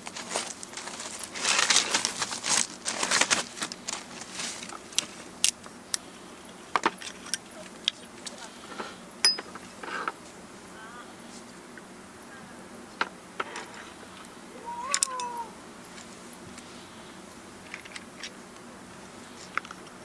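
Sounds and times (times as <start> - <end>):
cat meowing: 14.5 - 15.6.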